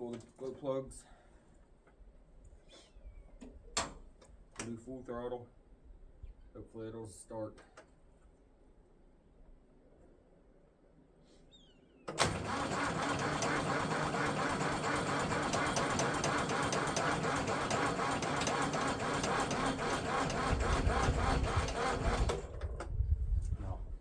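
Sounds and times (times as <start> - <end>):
diesel engine cranking: 12.1 - 22.9
starter clunk: 12.1 - 23.0.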